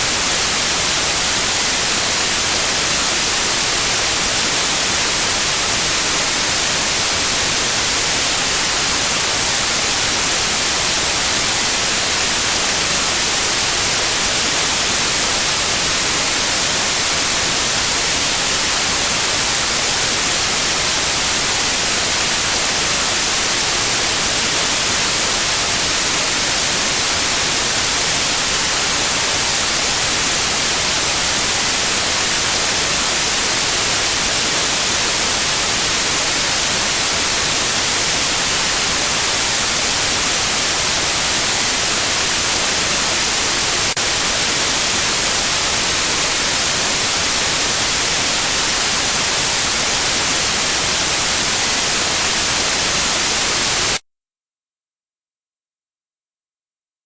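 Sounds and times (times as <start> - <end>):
white noise hiss: 0.0 - 54.0
very high-pitched steady tone: 0.0 - 57.0.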